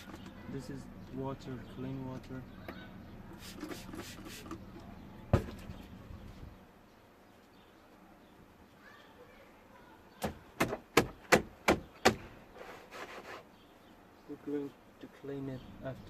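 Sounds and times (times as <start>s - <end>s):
spray bottle squirting: 3.3s - 4.6s.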